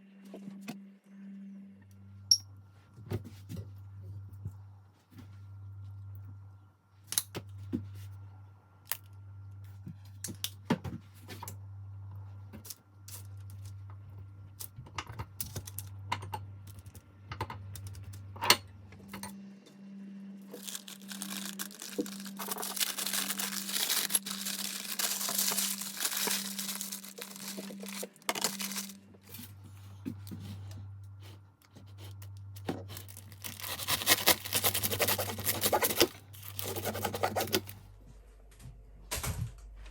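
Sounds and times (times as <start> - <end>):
steady low hum: 0.0 - 39.9
wrapping crinkling and tearing: 20.5 - 29.4, 32.6 - 37.8.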